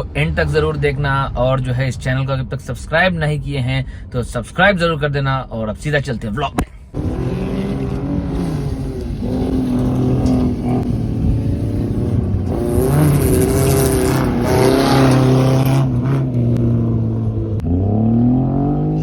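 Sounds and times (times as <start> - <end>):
race car engines revving: 6.9 - 19.0.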